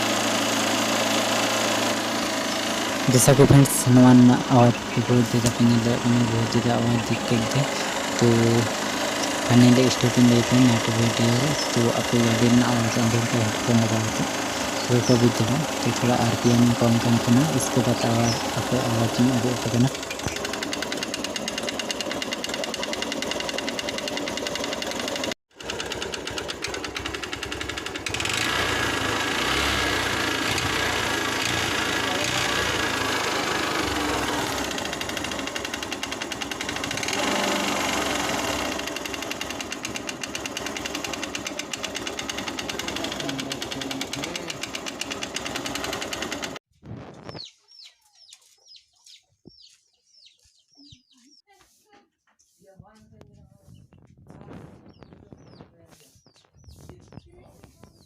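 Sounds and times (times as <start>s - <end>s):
motorcycle engine ticking: 2.2s - 46.6s
bird chirping: 47.3s - 51.6s, 54.8s - 58.0s.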